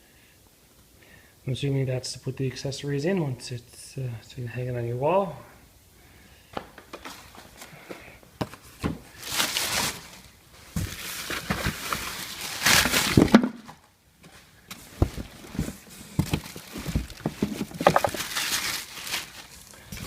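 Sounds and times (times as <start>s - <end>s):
cardboard packaging rustling: 8.4s - 13.8s, 14.7s - 20.0s.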